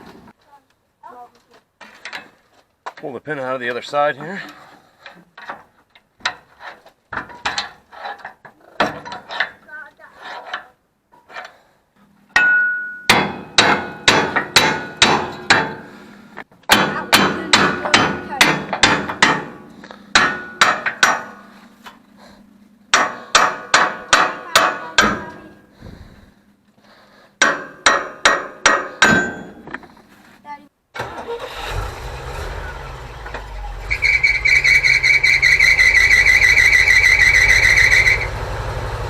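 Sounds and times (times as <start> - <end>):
hammer striking steel pin: 12.3 - 15.8, 16.7 - 21.4, 22.9 - 25.2, 27.4 - 29.6.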